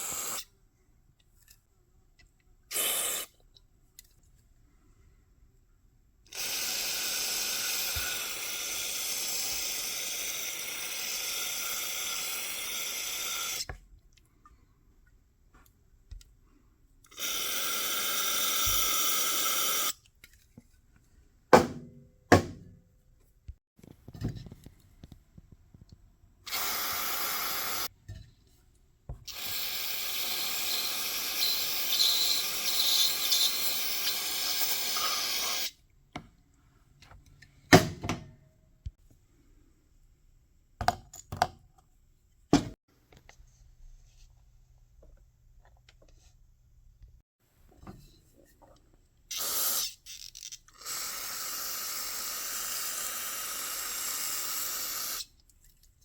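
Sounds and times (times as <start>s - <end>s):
hissing spray bursts: 2.7s - 3.3s, 26.5s - 27.9s, 29.3s - 35.7s, 49.3s - 50.0s, 50.8s - 55.3s
small parts clicking and knocking: 49.9s - 50.8s.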